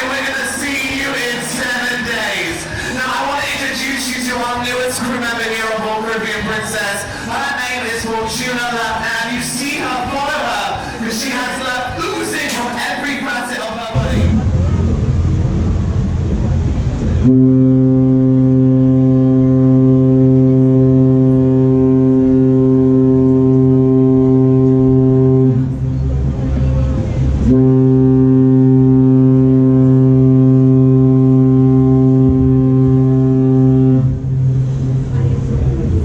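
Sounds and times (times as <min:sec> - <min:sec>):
ship horn blasts: 0:14.0 - 0:35.5.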